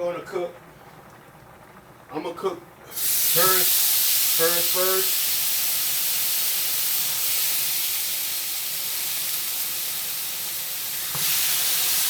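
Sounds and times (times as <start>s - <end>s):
steak sizzling in a frying pan: 2.9s - 12.0s.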